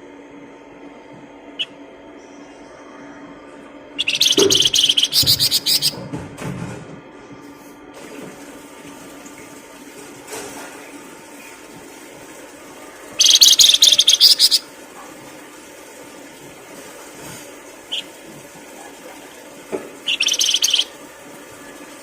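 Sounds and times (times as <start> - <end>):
bird chirp: 4.0 - 6.0, 13.2 - 14.6, 20.1 - 20.9
songbird trilling: 4.0 - 6.0, 13.2 - 14.6, 20.1 - 20.9.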